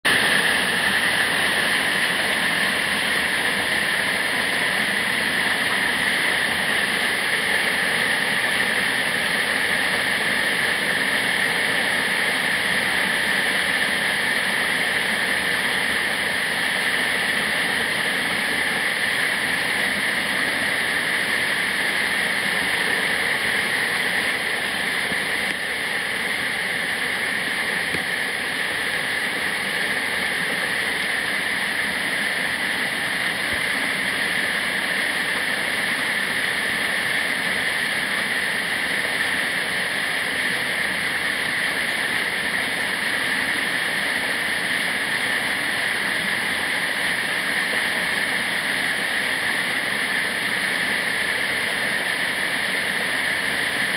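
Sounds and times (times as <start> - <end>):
waterfall rushing: 0.1 - 53.9.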